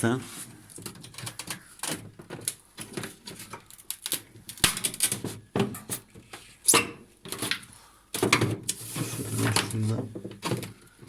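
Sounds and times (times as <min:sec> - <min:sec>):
plastic parts clicking and rattling: 0:00.7 - 0:11.0.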